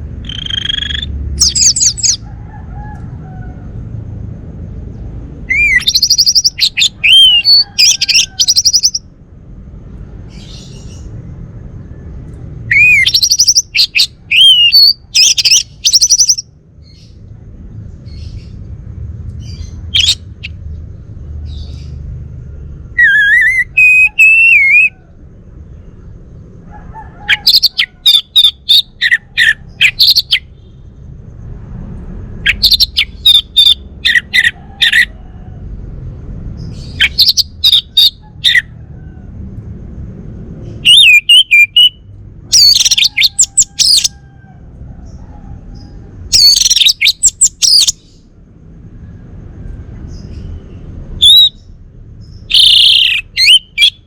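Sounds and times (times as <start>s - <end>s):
low background rumble: 0.0s - 54.0s
thrush singing chirps and whistles: 0.2s - 2.3s, 5.4s - 9.1s, 12.6s - 17.2s, 19.4s - 20.7s, 22.6s - 25.1s, 27.3s - 30.9s, 32.4s - 35.2s, 36.6s - 38.8s, 40.7s - 44.2s, 45.8s - 48.3s, 50.1s - 54.0s.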